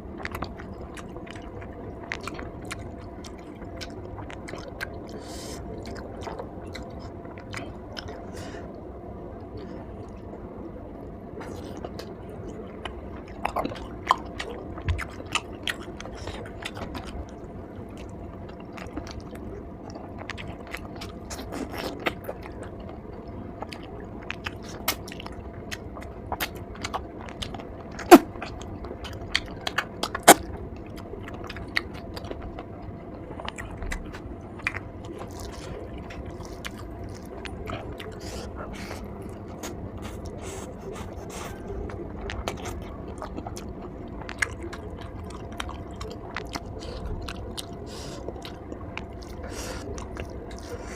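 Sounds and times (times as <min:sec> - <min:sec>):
chewing and biting: 0:00.2 - 0:08.4, 0:11.4 - 0:50.9.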